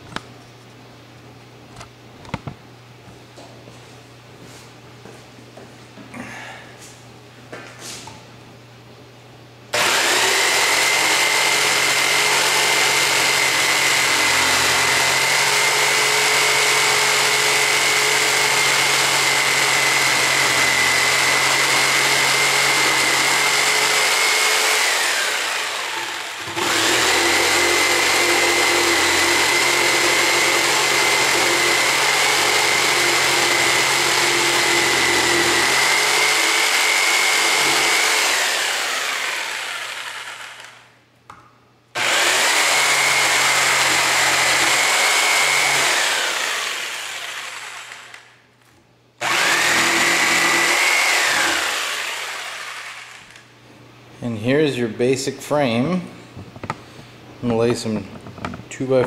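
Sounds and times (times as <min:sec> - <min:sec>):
electric drill whining: 0:09.8 - 0:40.9, 0:42.0 - 0:48.4, 0:49.2 - 0:53.5.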